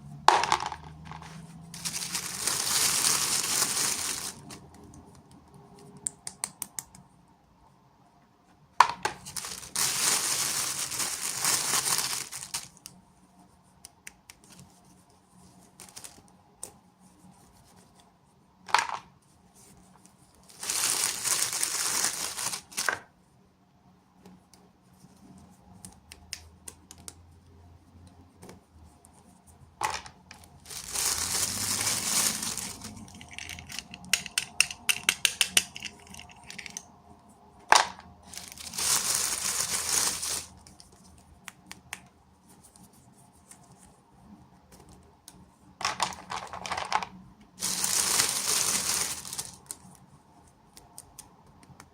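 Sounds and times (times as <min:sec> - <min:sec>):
plastic packaging crinkling and tearing: 0:01.7 - 0:04.9, 0:09.2 - 0:13.0, 0:15.6 - 0:16.2, 0:20.4 - 0:23.0, 0:30.4 - 0:34.9, 0:35.5 - 0:36.8, 0:38.2 - 0:41.2, 0:47.6 - 0:50.0
plastic pieces clicking and tapping: 0:33.2 - 0:36.8, 0:44.8 - 0:47.2.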